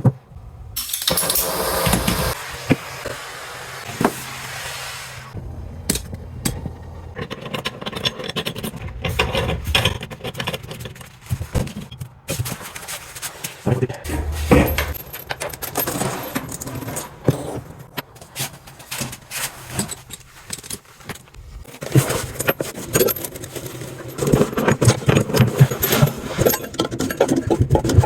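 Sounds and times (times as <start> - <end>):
small metal parts clinking: 14.1 - 18.0, 18.8 - 27.4.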